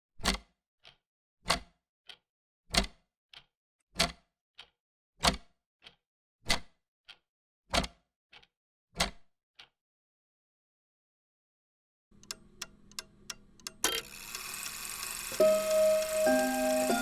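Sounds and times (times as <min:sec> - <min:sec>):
mechanical clock ticking: 0:12.2 - 0:17.0.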